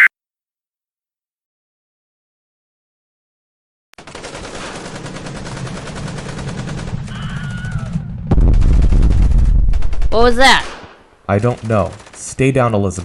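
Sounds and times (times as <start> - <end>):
automatic gunfire: 4.0 - 7.1, 8.6 - 13.0.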